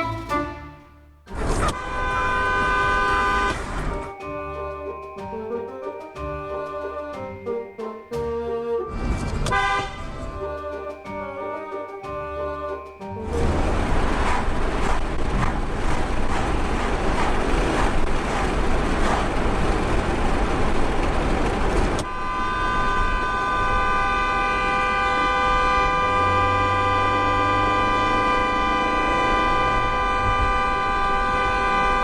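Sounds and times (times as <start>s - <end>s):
vehicle driving in traffic: 0.0s - 32.0s
vehicle horn long blast: 1.8s - 3.8s, 9.5s - 10.2s, 22.0s - 32.0s.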